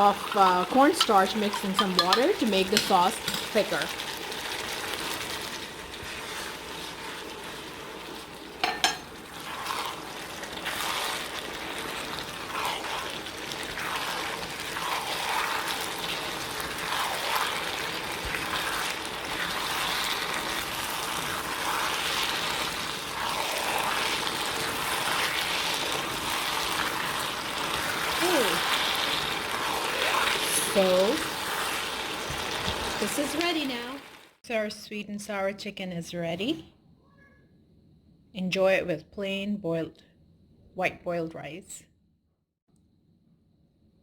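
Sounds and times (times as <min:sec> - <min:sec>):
sauce bubbling in a pan: 0:00.0 - 0:34.4
utensil clinking against pan: 0:00.9 - 0:03.6, 0:08.6 - 0:09.1.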